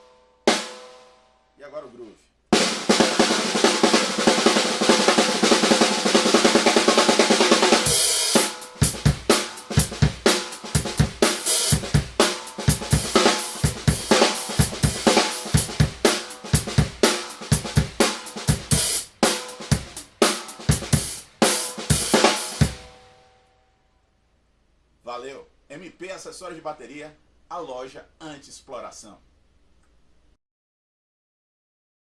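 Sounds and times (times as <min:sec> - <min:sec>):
drum kit beat: 0:00.0 - 0:01.0, 0:02.5 - 0:23.2
snare drum roll: 0:02.6 - 0:23.1.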